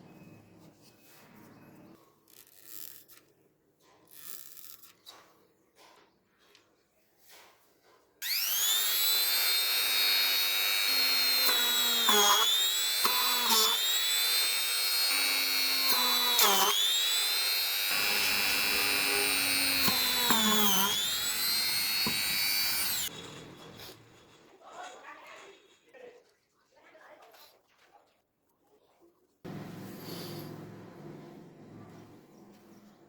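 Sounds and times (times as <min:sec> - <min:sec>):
small electric motor whining: 0:08.2 - 0:23.1.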